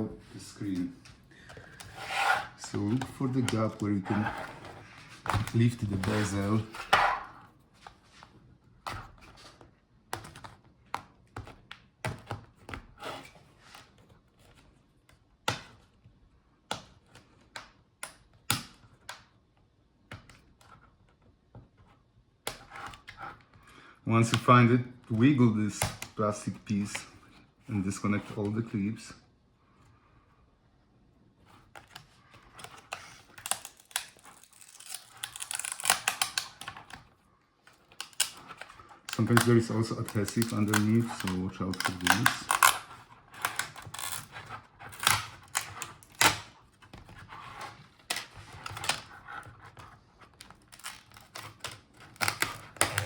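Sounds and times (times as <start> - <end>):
plastic clips clicking and crackling: 32.6 - 37.0, 37.7 - 46.5.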